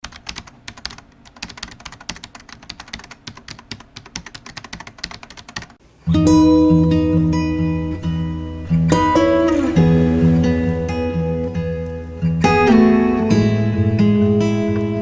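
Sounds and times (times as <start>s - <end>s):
keyboard typing clicks: 0.0s - 5.8s
acoustic guitar music: 5.9s - 15.0s.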